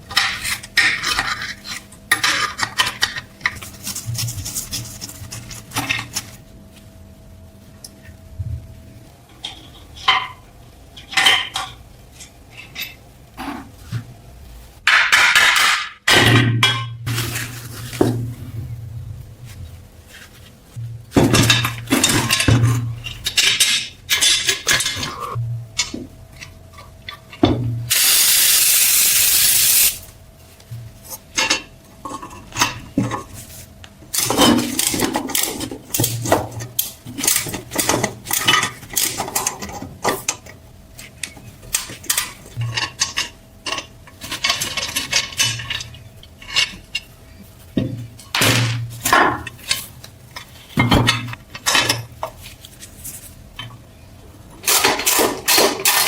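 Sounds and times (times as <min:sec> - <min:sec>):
faint steady hum: 0:00.0 - 0:55.9
spray hissing: 0:27.9 - 0:30.0.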